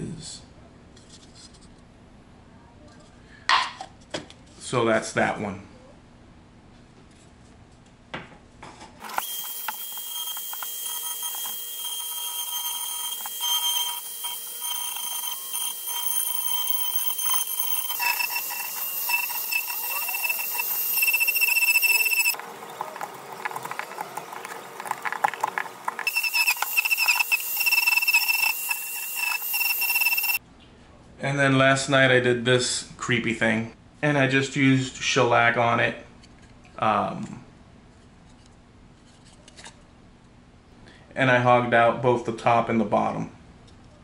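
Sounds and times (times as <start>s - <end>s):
lathe whining: 9.0s - 30.4s
tool scraping spinning wood: 9.0s - 30.4s.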